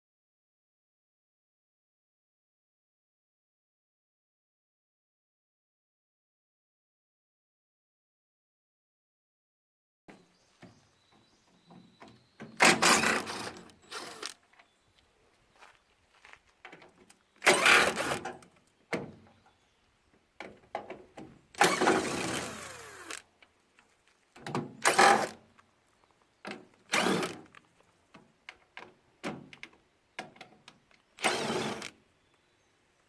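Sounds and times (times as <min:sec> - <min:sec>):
power tool bursts: 0:12.6 - 0:14.4, 0:17.4 - 0:18.4, 0:21.6 - 0:23.2, 0:24.8 - 0:25.4, 0:26.9 - 0:27.5, 0:31.2 - 0:32.0.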